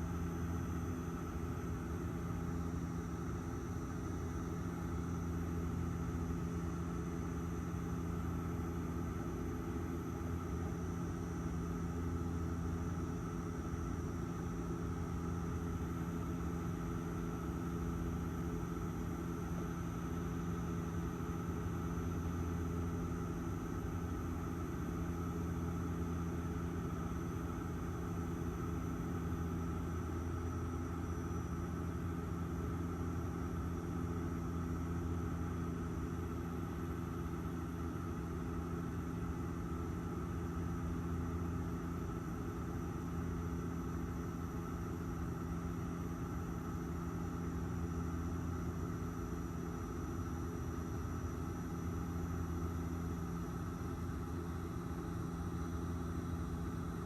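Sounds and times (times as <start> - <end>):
airliner cabin drone: 52.0 - 57.0.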